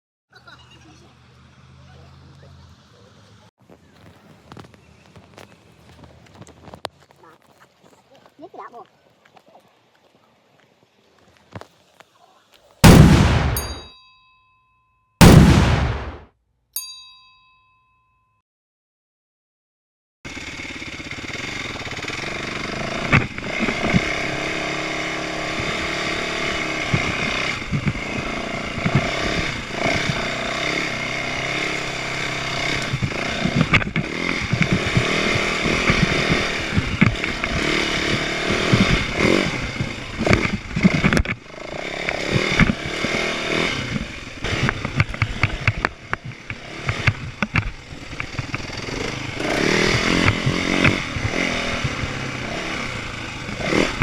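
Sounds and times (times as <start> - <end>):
small petrol engine running: 20.3 - 54.0.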